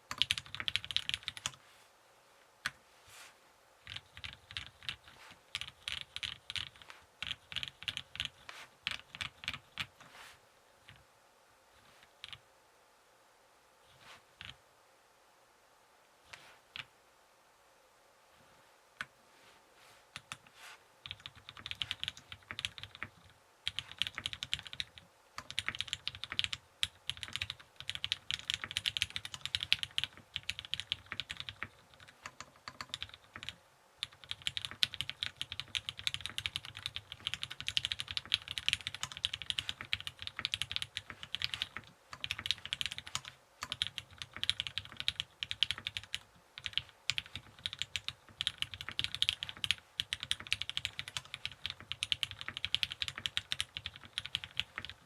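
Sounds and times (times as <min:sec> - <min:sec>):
mechanical keyboard typing: 0:00.1 - 0:01.6, 0:03.8 - 0:09.9, 0:20.2 - 0:55.0.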